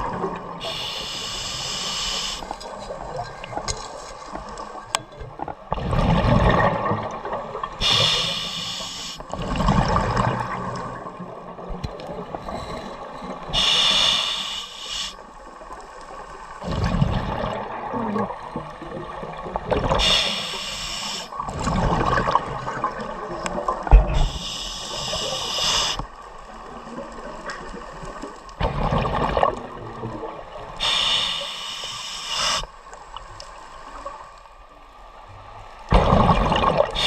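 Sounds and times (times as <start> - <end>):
diver inhaling through regulator: 0.6 - 2.6, 7.8 - 9.3, 13.5 - 15.2, 20.0 - 21.4, 24.1 - 26.1, 30.8 - 32.7
exhaled bubbles rumbling: 4.4 - 8.0, 9.2 - 13.6, 16.6 - 20.2, 21.4 - 24.6, 26.5 - 30.8, 35.9 - 37.0.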